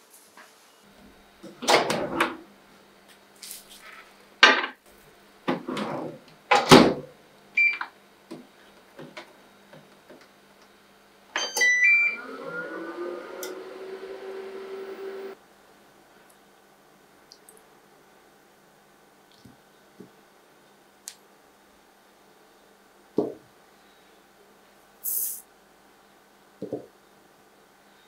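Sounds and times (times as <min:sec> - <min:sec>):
microwave humming: 0:00.9 - 0:02.5, 0:11.3 - 0:15.4
microwave keypad beeps: 0:07.6 - 0:07.9, 0:11.4 - 0:12.4.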